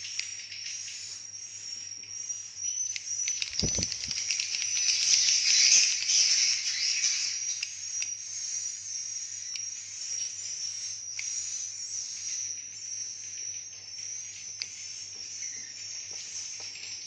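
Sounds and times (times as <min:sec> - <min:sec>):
swiftlets twittering: 0:03.4 - 0:04.3.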